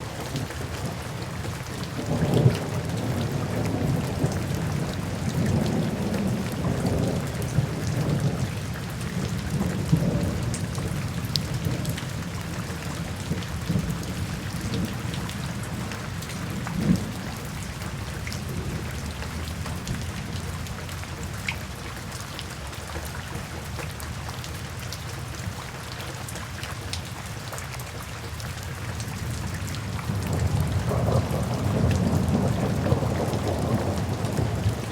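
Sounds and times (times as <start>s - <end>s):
rolling thunder rumbles: 0.0s - 21.0s, 29.2s - 34.9s
steady rain falling: 0.0s - 34.9s.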